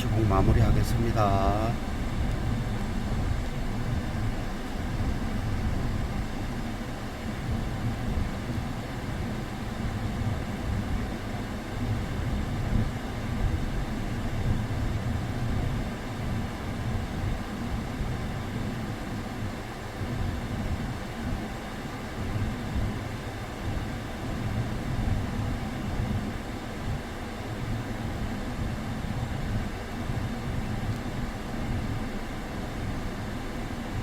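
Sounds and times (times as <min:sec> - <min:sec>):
car engine idling: 0:00.0 - 0:16.2
air conditioning running: 0:00.0 - 0:34.0.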